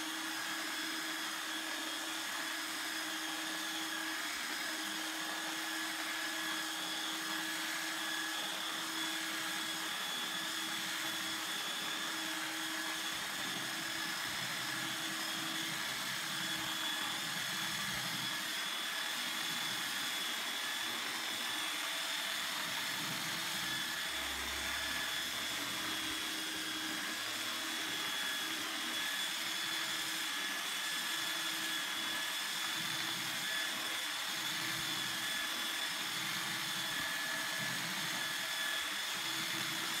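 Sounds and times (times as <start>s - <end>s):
electric sander whirring on wood: 0.0s - 40.0s.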